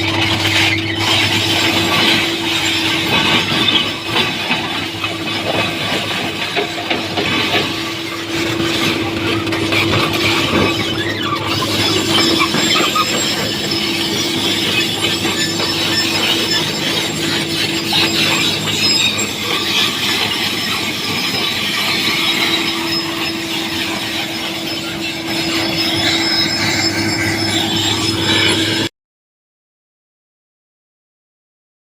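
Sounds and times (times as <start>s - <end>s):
constant whine: 0.0s - 28.9s
excavator engine drone: 0.0s - 28.9s
harsh mechanical rattling: 0.0s - 28.9s.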